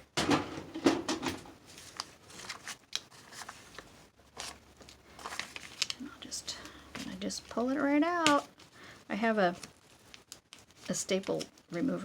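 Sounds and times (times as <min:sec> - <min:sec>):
paper rustling: 0:00.9 - 0:06.1.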